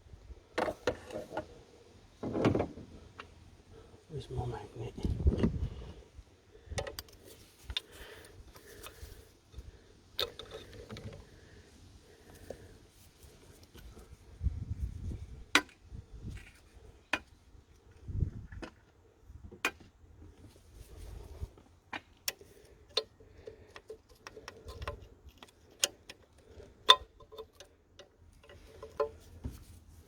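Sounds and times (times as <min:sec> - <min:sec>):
metallic clicks of hand tools: 0:10.2 - 0:11.1, 0:22.2 - 0:29.2.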